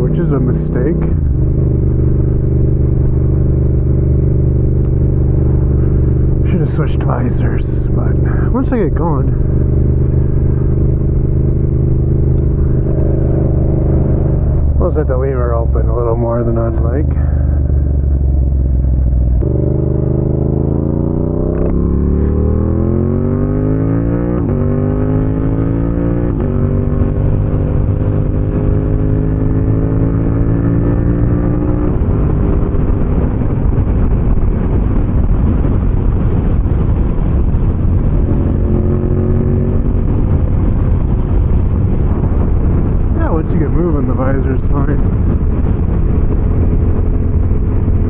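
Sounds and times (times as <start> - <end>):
motorcycle engine revving: 0.0 - 48.0
wind rushing over microphone: 0.0 - 48.0.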